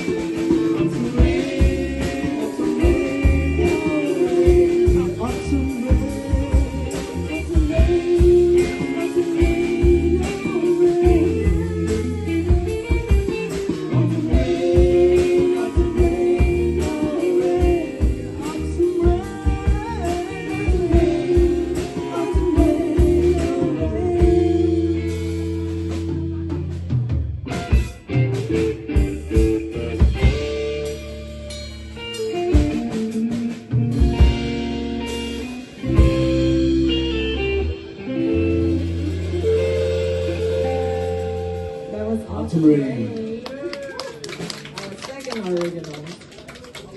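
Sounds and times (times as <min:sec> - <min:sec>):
person singing: 0:00.0 - 0:26.7
drum kit: 0:00.0 - 0:42.8, 0:43.5 - 0:46.0
bass guitar: 0:00.0 - 0:46.9
guitar: 0:00.0 - 0:46.9.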